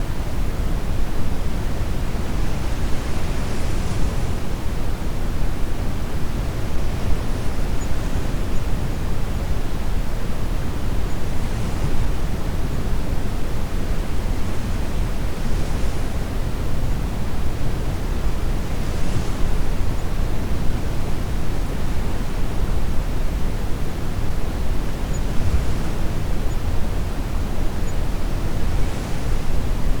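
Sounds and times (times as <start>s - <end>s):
brown noise hiss: 0.0s - 30.0s.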